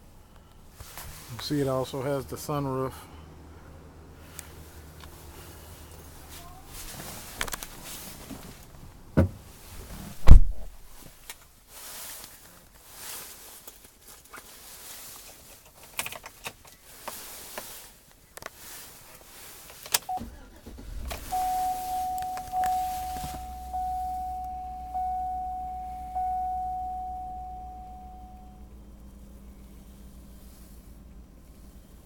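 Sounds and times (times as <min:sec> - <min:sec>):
handling clicks and rustles: 0:13.5 - 0:29.4
car engine starting and idling: 0:19.3 - 0:32.0
dashboard warning chime: 0:20.1 - 0:28.8.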